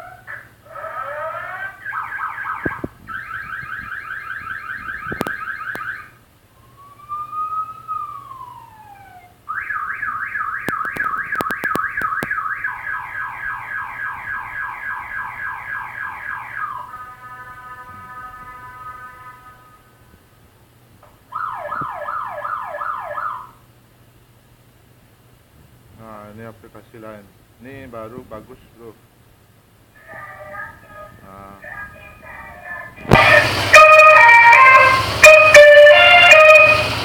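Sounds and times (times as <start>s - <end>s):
electronic horn siren sounds: 1.9s - 6.2s, 9.5s - 20.2s, 33.0s - 37.0s
sharp clicks: 10.6s - 12.4s.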